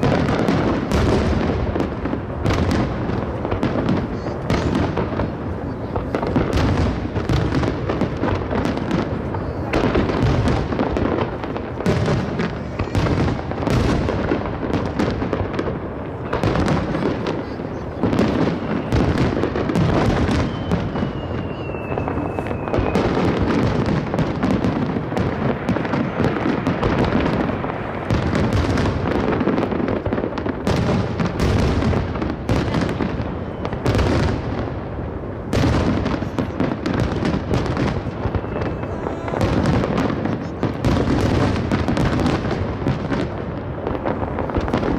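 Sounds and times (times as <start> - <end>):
falling whistle: 20.3 - 23.1.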